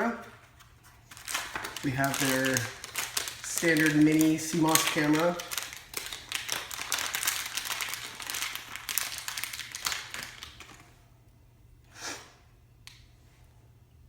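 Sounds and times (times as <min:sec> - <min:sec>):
packaging crinkling: 0:01.0 - 0:10.9.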